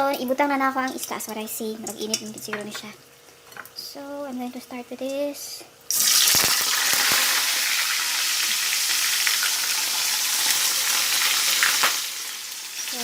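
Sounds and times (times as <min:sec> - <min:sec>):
fish sizzling in hot oil: 0:05.9 - 0:13.0.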